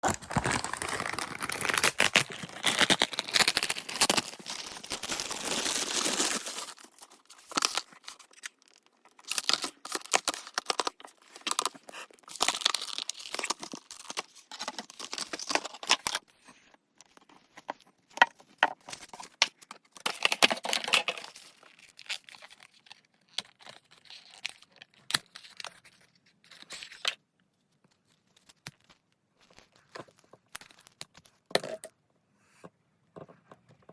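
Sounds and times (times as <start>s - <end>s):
packaging tearing and rustling: 0.0s - 16.2s.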